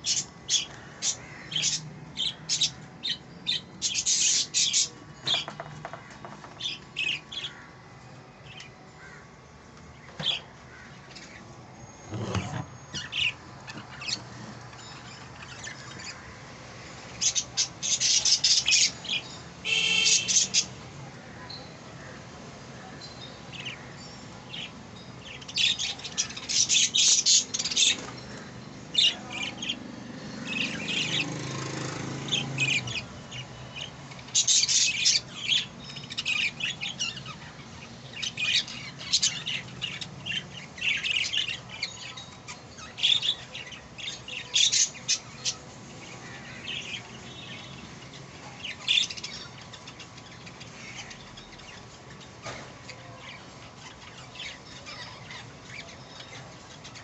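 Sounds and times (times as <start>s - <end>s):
budgerigar chicks squawking: 0.0s - 3.0s, 12.0s - 14.4s.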